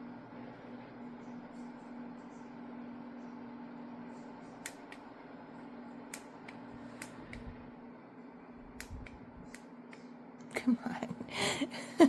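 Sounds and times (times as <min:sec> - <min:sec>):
tower fan whirring: 0:00.0 - 0:12.0
sharp clicks: 0:04.6 - 0:05.1, 0:06.1 - 0:07.5, 0:08.8 - 0:10.1.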